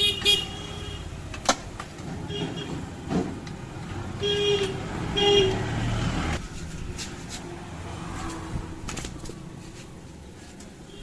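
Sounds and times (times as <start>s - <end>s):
sharp clicks and knocks: 1.3s - 3.6s
horn tooting: 4.2s - 6.1s.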